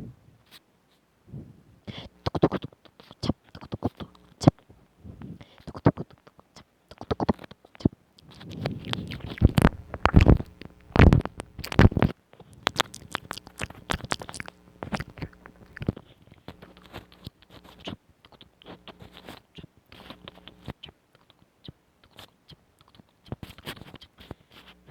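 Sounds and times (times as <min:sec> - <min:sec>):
wet mouth clicks and smacks: 0:05.6 - 0:19.4.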